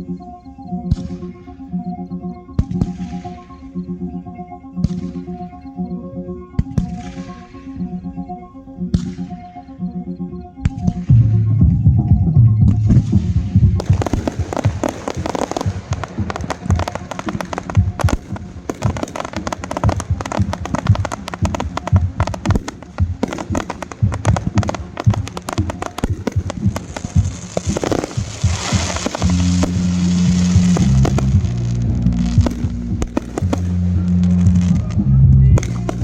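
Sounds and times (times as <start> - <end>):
fireworks bangs and crackles: 12.8 - 35.0, 35.6 - 36.0
hissing crackling firework burst: 25.4 - 31.4.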